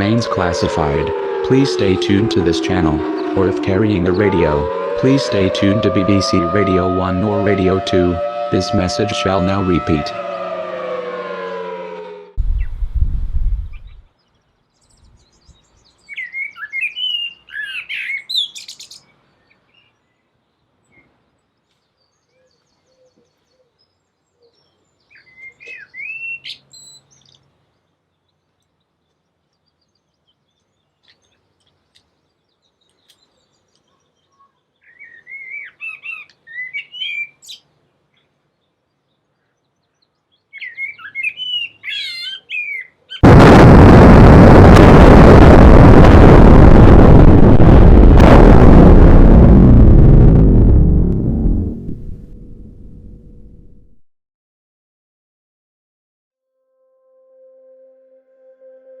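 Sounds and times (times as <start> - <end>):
loud full noise: 0.0 - 13.8, 43.2 - 53.0
songbird chirping: 13.6 - 43.2.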